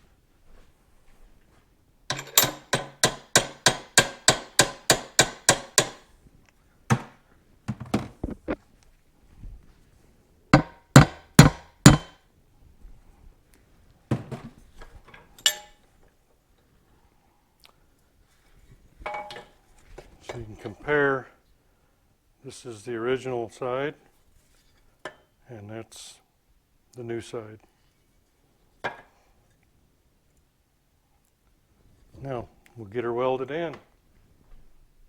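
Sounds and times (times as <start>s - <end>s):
hammer blows on metal: 10.6s - 12.2s.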